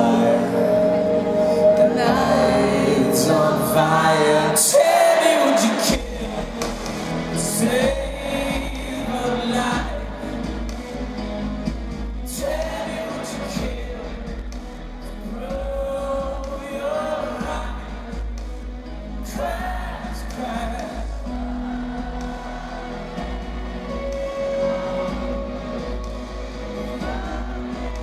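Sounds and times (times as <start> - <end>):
person singing long held notes: 0.0 - 10.8.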